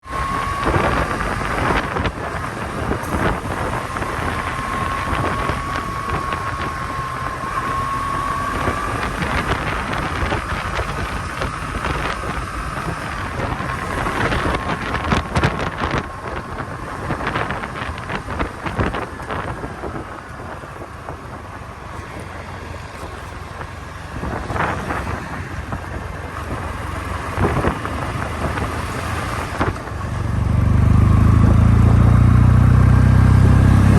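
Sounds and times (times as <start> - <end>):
motorcycle engine and exhaust: 0.0 - 33.9
wind buffeting microphone: 0.0 - 33.9.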